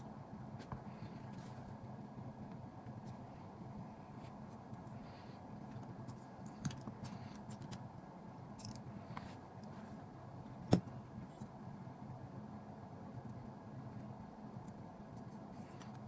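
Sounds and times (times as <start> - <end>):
faint steady hum: 0.0 - 16.0
small screws and tools tinkling: 8.6 - 8.9.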